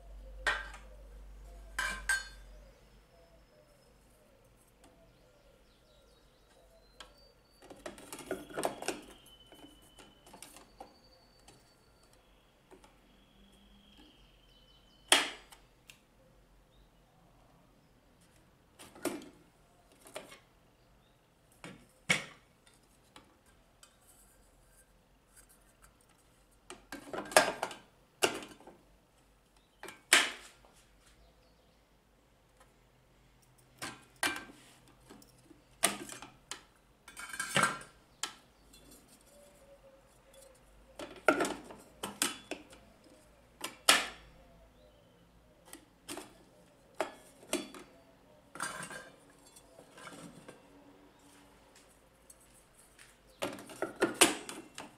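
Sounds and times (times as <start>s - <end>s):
kitchen parts clinking and knocking: 1.8s - 2.5s, 7.7s - 10.9s, 33.8s - 38.0s, 40.4s - 42.8s, 46.1s - 50.6s.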